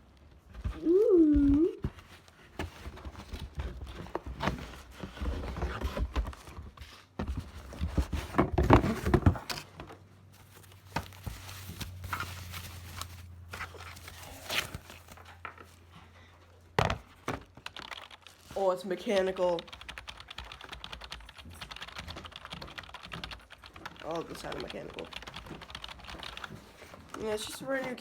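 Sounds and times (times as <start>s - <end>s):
cardboard and plastic packaging handled: 0.0s - 16.0s, 16.7s - 19.2s, 24.1s - 28.0s.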